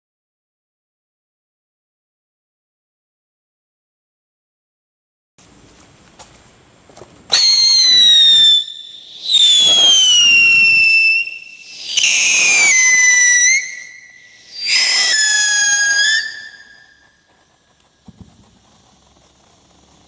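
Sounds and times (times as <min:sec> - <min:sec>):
faint firework crackling: 0:05.4 - 0:20.0
firework whistles falling in pitch: 0:07.3 - 0:17.2
firework hiss: 0:07.3 - 0:20.0.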